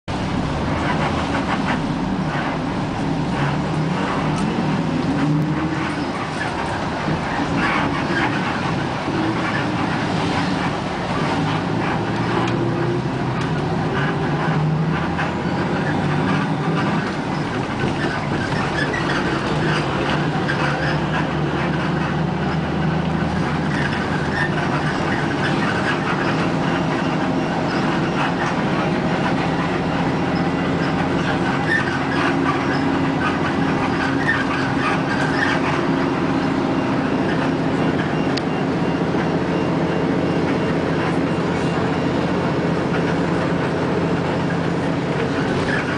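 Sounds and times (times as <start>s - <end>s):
vehicle ride rumble: 0.0s - 45.9s
small squeaks and rattles: 29.2s - 38.3s.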